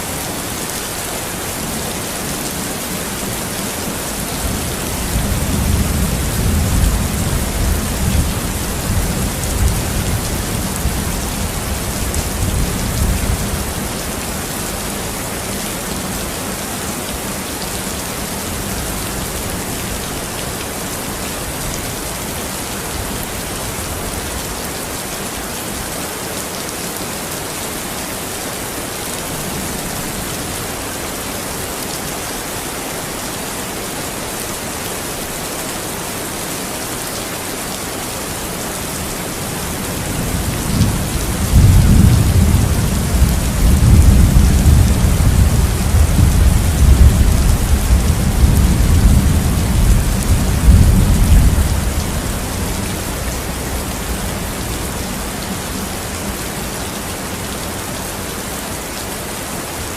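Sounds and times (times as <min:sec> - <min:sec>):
steady rain falling: 0:00.0 - 0:59.9
thunder rumbling: 0:39.7 - 0:55.3.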